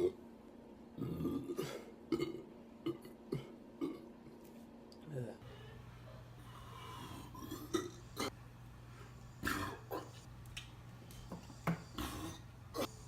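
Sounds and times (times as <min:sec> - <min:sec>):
steady low hum: 0:00.0 - 0:13.0
man burping: 0:01.0 - 0:04.1.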